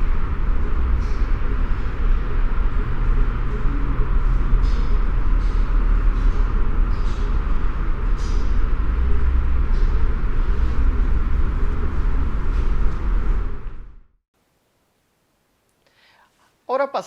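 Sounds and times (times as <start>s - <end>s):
steady low rumble: 0.0s - 14.2s.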